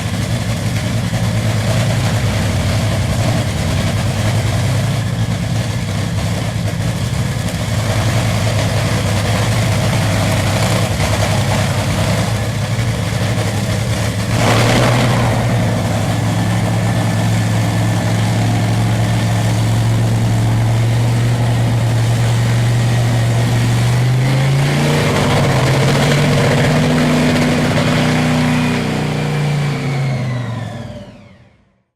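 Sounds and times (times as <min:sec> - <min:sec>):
drag car engine idling and revving: 0:00.0 - 0:31.7.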